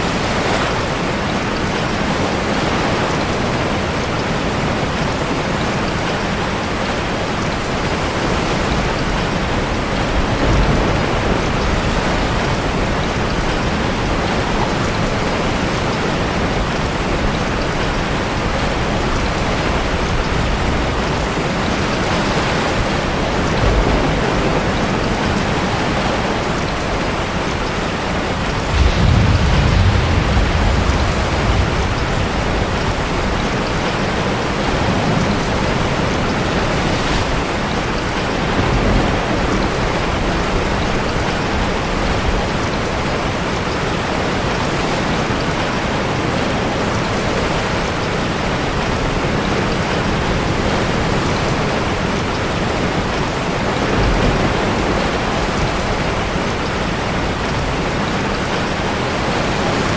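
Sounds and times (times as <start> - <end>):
heavy rain: 0.0 - 59.9
sea waves breaking: 0.0 - 59.9
deep low rumbles: 28.4 - 34.0.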